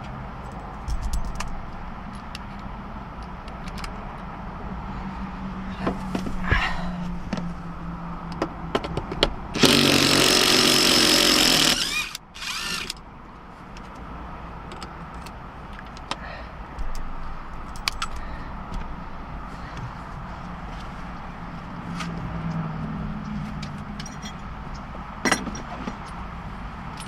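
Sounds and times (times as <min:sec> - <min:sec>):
tools and parts clattering: 0:00.5 - 0:02.5, 0:24.0 - 0:26.2
power tool motor whine: 0:09.6 - 0:13.0.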